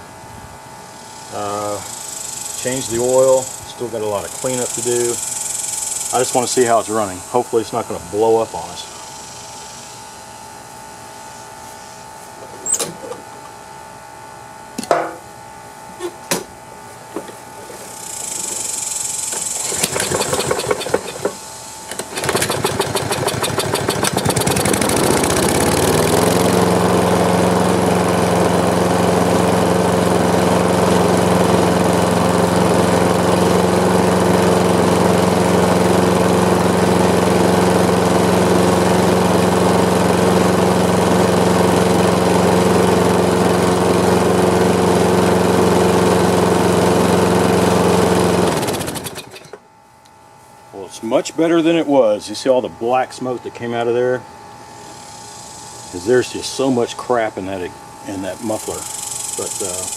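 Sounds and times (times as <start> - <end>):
lawn mower engine cranking and running: 1.4 - 8.8, 12.4 - 13.6, 17.2 - 49.7, 55.0 - 59.9.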